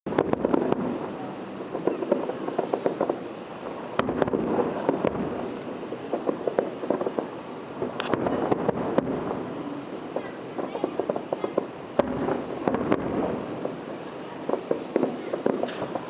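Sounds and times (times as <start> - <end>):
fireworks crackling and banging: 0.1 - 16.0.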